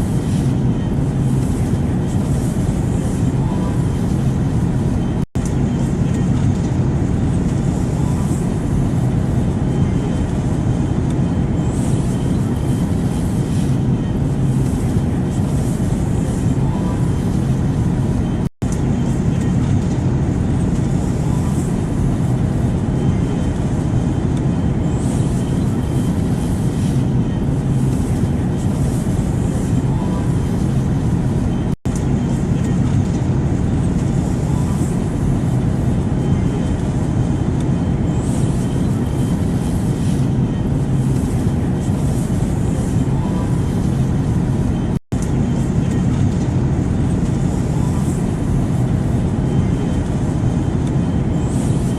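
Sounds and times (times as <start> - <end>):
airplane white noise: 0.0 - 51.9.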